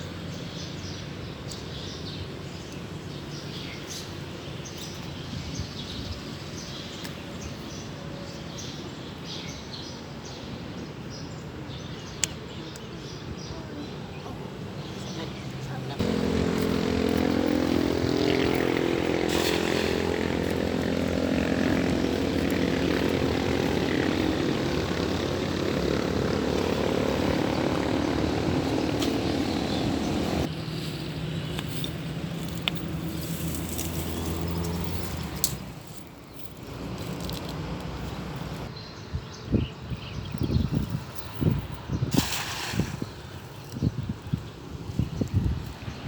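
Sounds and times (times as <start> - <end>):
small engine running: 16.0 - 30.5.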